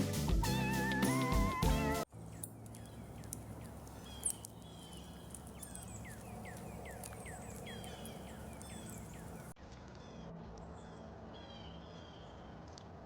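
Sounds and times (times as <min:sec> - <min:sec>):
small birds chirping: 0:00.5 - 0:09.6
high bird calls: 0:00.6 - 0:09.6.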